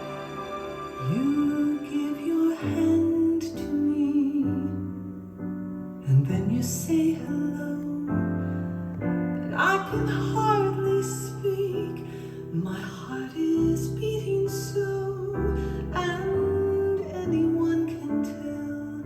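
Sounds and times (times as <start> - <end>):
singing with instrumental accompaniment: 0.8 - 4.8.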